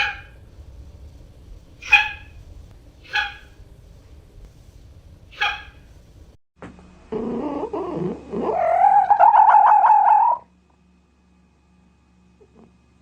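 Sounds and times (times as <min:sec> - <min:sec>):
animal wavering cry: 0:07.1 - 0:10.5.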